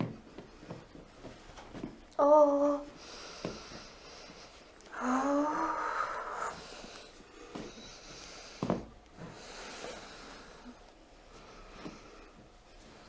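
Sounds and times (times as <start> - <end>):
woman's breathy moan: 4.9 - 6.6.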